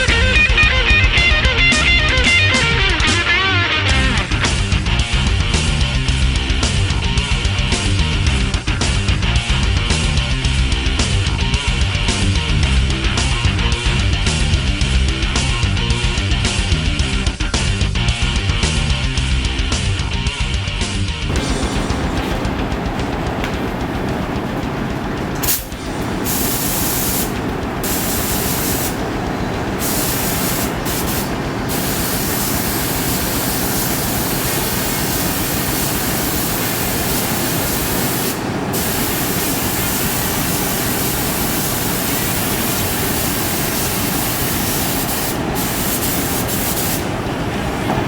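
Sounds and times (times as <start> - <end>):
spray gun hissing: 21.3 - 47.8.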